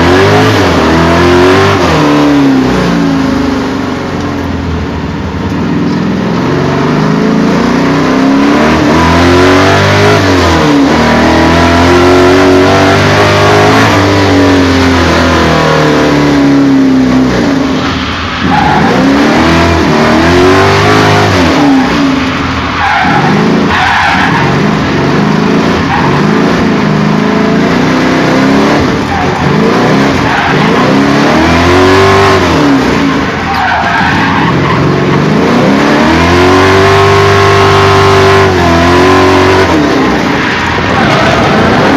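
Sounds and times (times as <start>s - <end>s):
car engine revving: 0.0s - 41.9s.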